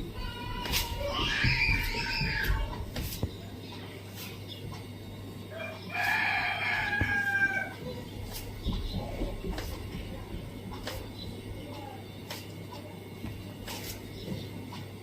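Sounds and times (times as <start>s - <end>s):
faint steady hum: 0.0s - 15.0s
rooster crowing: 5.5s - 7.8s.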